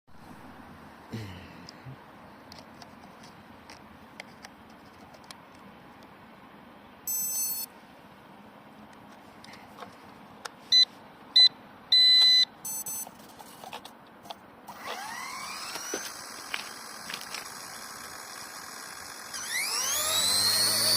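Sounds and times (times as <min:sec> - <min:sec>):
electronic beeps: 0:07.1 - 0:07.7
small electric motor whine: 0:14.7 - 0:20.9.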